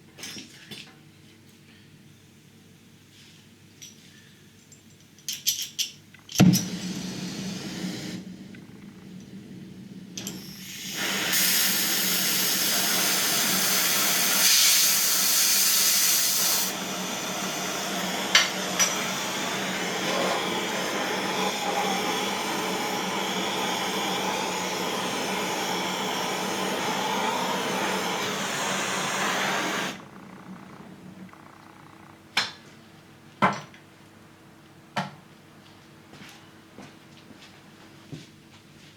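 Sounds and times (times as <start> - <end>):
loud steady hiss: 6.4 - 30.1.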